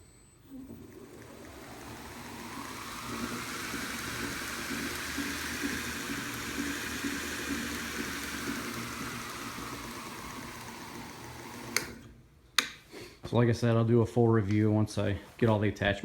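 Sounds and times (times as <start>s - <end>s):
belt grinder running: 0.6s - 12.1s.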